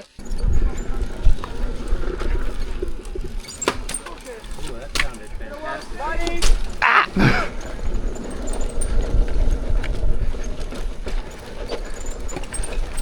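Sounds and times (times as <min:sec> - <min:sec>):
small clicks and knocks: 0:00.0 - 0:06.9
tyre noise on dirt: 0:00.0 - 0:13.0
wind rumble on microphone: 0:00.2 - 0:13.0.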